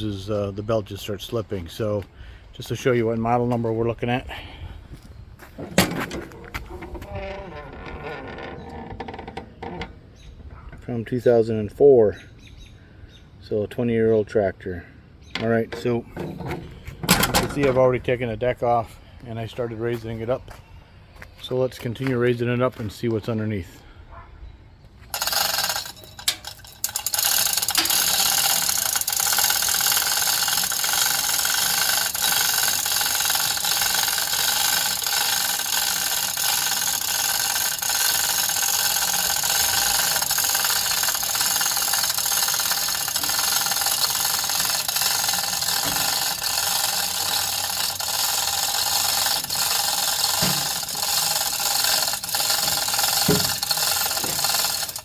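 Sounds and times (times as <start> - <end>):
lift motor whining and rattling: 25.1 - 55.0.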